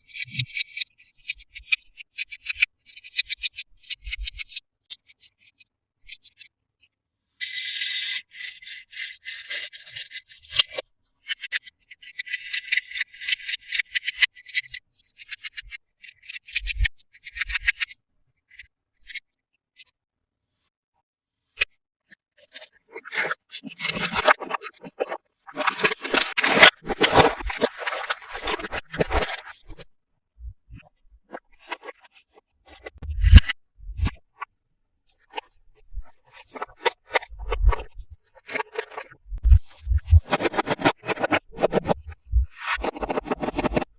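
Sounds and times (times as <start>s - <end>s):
plastic rasping: 35.8s - 43.9s.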